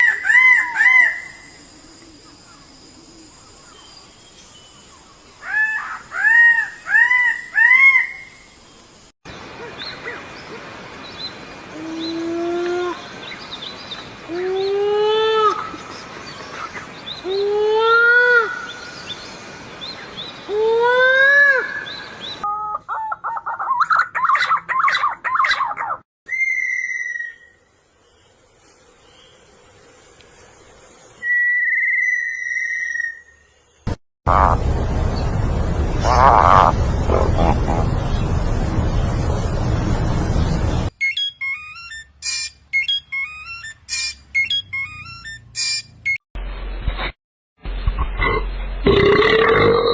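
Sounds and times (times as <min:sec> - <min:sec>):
bird calls rising and falling: 0:00.0 - 0:01.5, 0:05.4 - 0:08.5, 0:31.2 - 0:39.1, 0:40.3 - 0:46.2
clear whistled bird note: 0:41.0 - 0:45.8.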